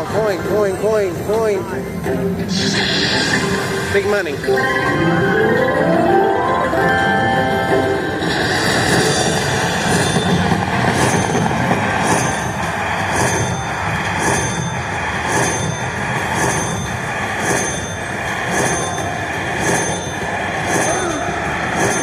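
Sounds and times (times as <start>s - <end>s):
casino crowd din: 0.0s - 22.0s
slot machine sounds: 2.0s - 11.5s.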